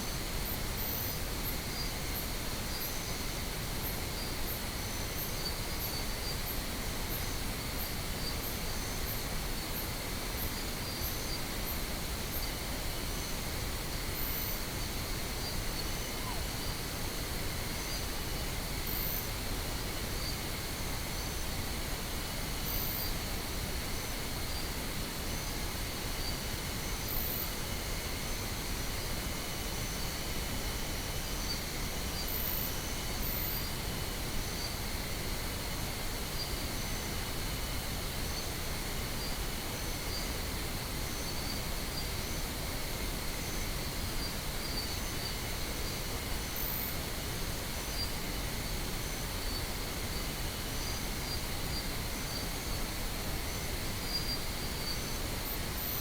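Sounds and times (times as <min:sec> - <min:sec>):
pink noise hiss: 0:00.0 - 0:56.0.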